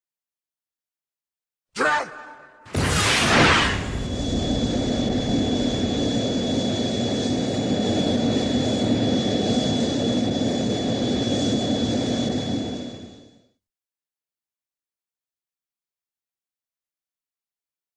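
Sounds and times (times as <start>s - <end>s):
jet-like rushing with high whistle: 2.7s - 13.2s.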